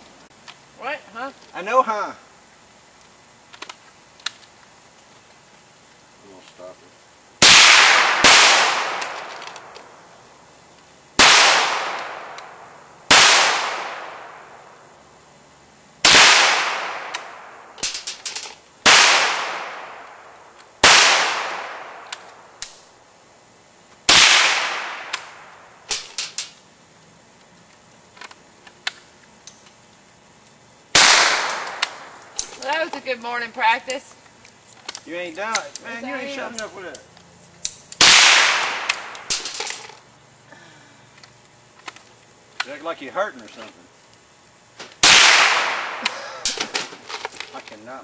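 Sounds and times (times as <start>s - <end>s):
pistol shots: 7.4s - 9.7s, 11.2s - 14.6s, 16.0s - 18.2s, 18.8s - 22.8s, 24.1s - 26.1s, 30.9s - 32.5s, 38.0s - 39.6s, 45.0s - 46.6s.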